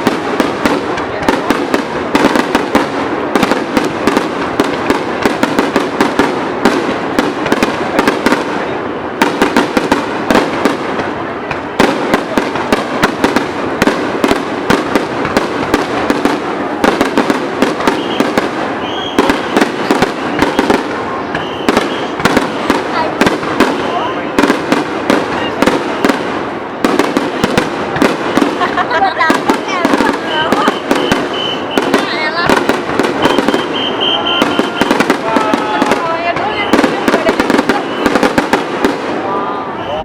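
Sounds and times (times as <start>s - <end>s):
fireworks crackling and popping: 0.0s - 40.0s.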